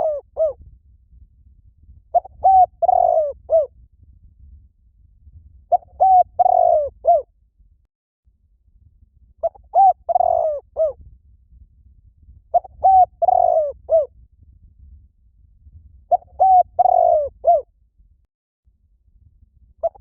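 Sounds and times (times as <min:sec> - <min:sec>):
dove cooing: 0:00.0 - 0:00.6, 0:02.2 - 0:03.7, 0:05.7 - 0:07.3, 0:09.4 - 0:11.0, 0:12.6 - 0:14.1, 0:16.1 - 0:17.6.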